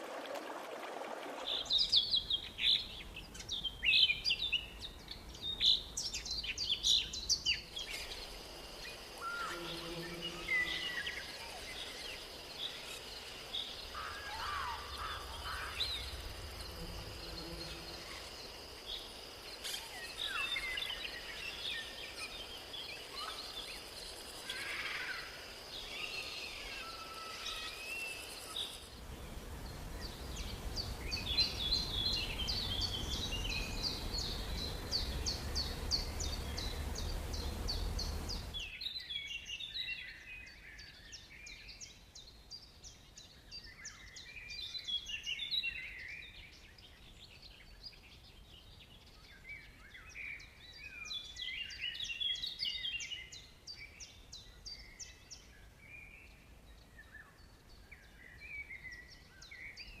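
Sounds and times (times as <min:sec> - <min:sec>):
birds chirping: 0:01.5 - 0:38.7
steady rushing noise: 0:29.0 - 0:38.6.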